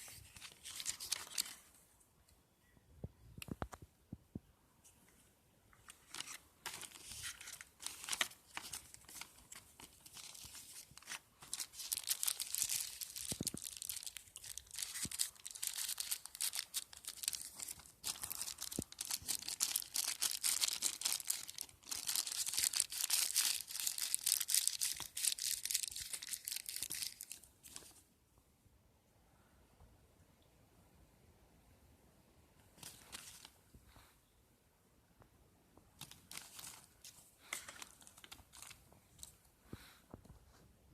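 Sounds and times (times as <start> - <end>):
plastic packaging crinkling: 0.0 - 1.7, 5.9 - 28.0, 36.0 - 39.4.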